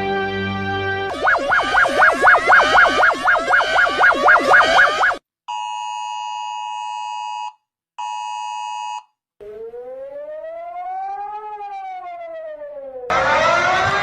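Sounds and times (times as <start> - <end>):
siren wail: 1.1 - 5.2, 9.4 - 14.0.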